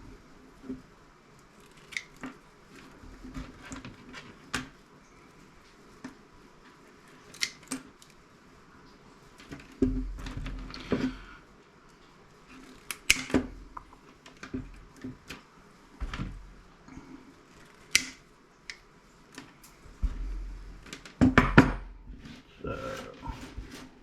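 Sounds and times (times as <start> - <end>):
dull thuds: 19.9 - 20.6.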